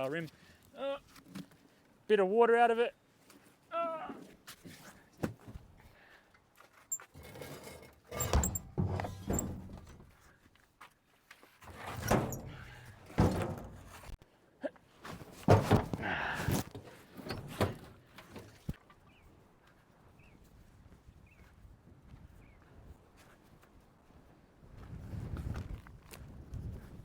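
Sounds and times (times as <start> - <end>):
heavy thunks of wheel rim: 7.2 - 10.2, 11.7 - 14.2, 15.2 - 18.6.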